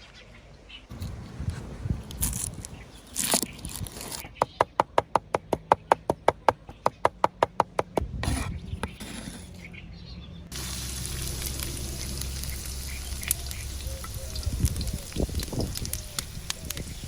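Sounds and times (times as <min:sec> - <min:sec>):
food sizzling in oil: 0:10.5 - 0:17.0.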